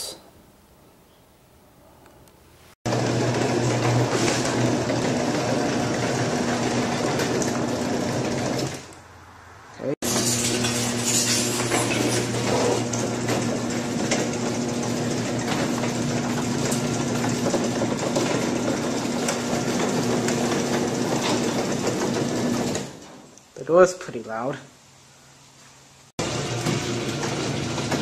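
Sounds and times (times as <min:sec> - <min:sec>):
garage door opener motor humming: 0:02.8 - 0:09.0, 0:10.0 - 0:23.3, 0:26.2 - 0:28.0.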